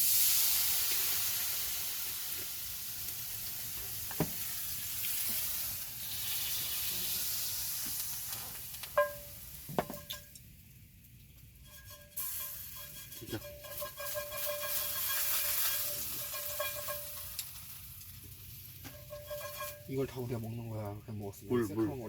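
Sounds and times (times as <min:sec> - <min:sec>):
hot pan sizzling: 0:00.0 - 0:20.6
utensil clinking against pan: 0:09.0 - 0:10.3, 0:11.6 - 0:17.4, 0:18.9 - 0:19.9.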